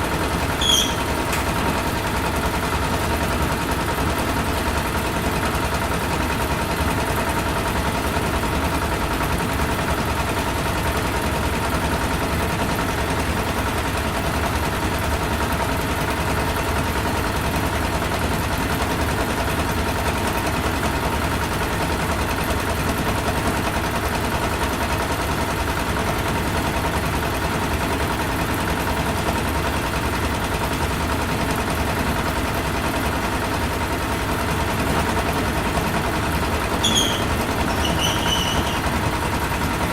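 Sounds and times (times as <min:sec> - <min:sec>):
factory engine chugging: 0:20.0 - 0:39.9.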